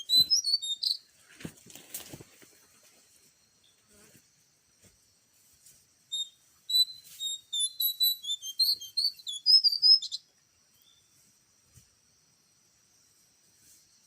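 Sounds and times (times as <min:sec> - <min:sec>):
songbird singing: 0:00.0 - 0:01.5, 0:02.5 - 0:04.0, 0:06.0 - 0:14.0.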